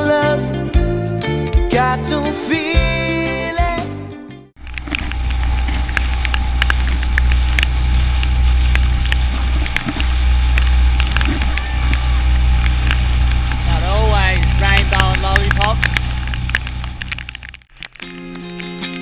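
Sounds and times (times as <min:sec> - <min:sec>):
outboard motor droning: 0:04.6 - 0:17.7.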